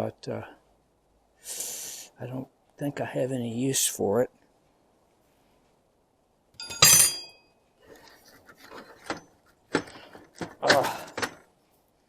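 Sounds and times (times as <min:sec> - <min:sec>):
steel tools clinking: 0:06.6 - 0:07.5
tools rattling in a toolbox: 0:08.0 - 0:11.5.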